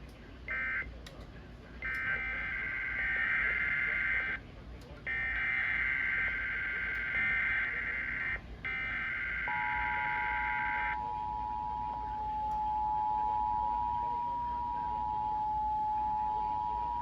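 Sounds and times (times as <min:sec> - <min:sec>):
two-tone attention signal: 0:09.5 - 0:17.0.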